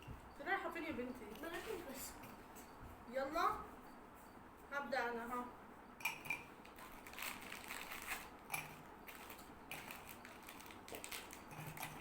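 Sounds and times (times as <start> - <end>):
biscuit packets crackling: 6.7 - 8.3, 9.1 - 12.0.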